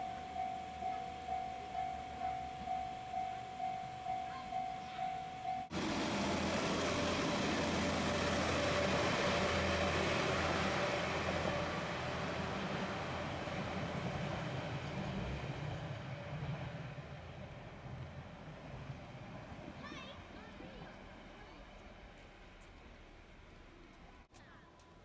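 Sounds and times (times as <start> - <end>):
level crossing warning bell: 0.0 - 11.9
diesel train passing: 0.0 - 24.3.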